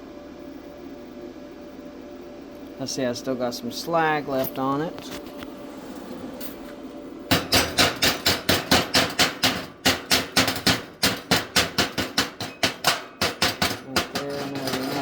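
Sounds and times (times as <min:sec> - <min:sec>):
chipping hammer striking metal: 0:07.3 - 0:15.0.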